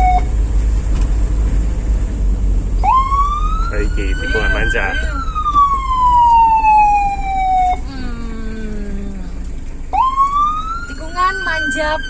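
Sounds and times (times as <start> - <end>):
vehicle siren wailing: 0.0 - 0.3, 2.8 - 7.8, 9.9 - 12.0
low rumble of moving vehicle: 0.0 - 12.0.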